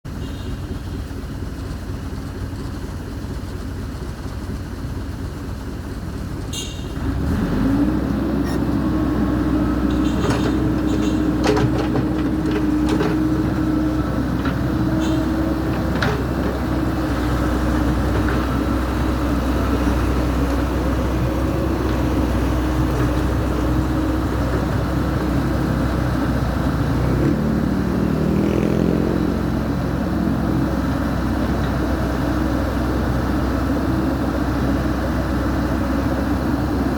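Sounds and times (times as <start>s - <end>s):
diesel engine idling and revving: 0.1s - 36.9s
metallic clanks: 9.8s - 13.6s.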